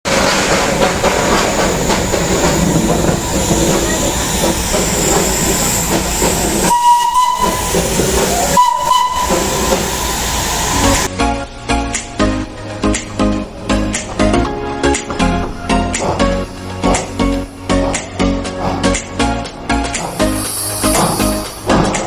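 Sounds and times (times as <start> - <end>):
steam hissing: 0.1 - 22.0
steam train whistle blasts: 0.2 - 11.1, 20.0 - 22.0.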